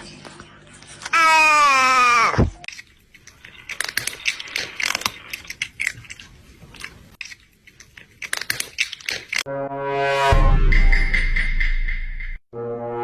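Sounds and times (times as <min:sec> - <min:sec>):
crunchy chewing of hard food: 0:02.6 - 0:09.5.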